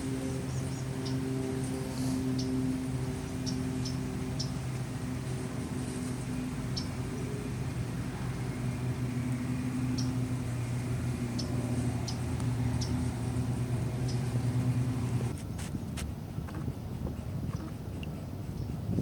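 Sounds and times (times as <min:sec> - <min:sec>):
low engine drone: 0:00.0 - 0:19.0.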